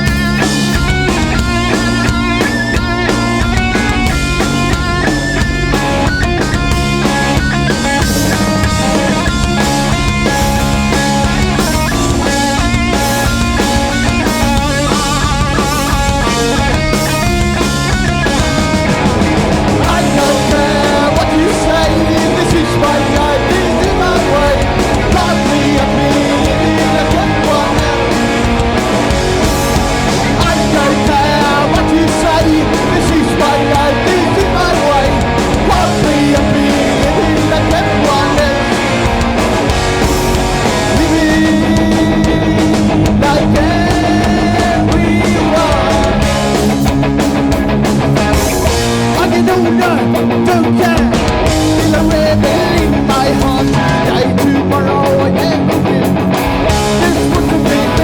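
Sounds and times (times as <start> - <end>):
punk rock band playing: 0.0 - 58.0
person singing: 19.7 - 28.7, 30.2 - 39.0, 40.8 - 46.7, 49.2 - 56.1, 56.8 - 58.0.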